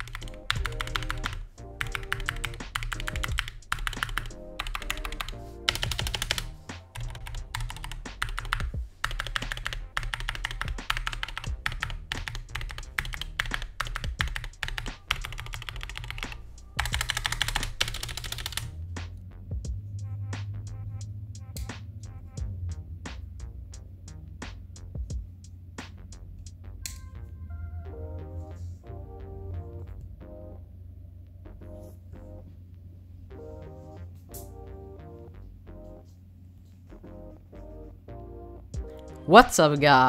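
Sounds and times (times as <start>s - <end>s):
mechanical keyboard typing: 0.0s - 18.7s
background music: 0.0s - 40.0s.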